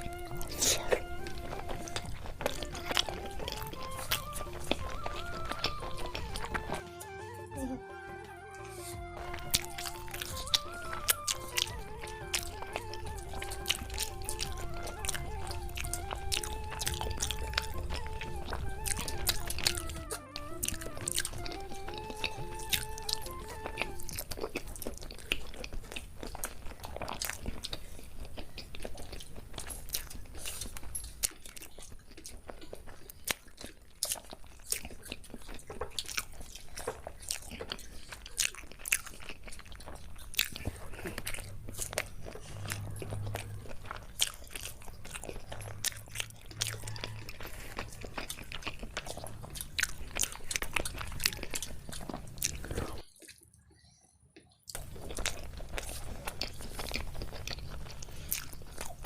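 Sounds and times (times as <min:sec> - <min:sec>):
background music melody: 0:00.0 - 0:26.0, 0:38.9 - 0:53.2
chewing and crunching: 0:00.0 - 0:59.0.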